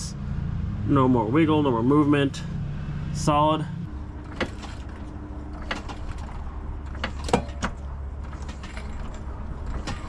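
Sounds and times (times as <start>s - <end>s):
steady low hum: 0.0s - 10.0s
metal tools clicking and knocking: 4.2s - 10.0s.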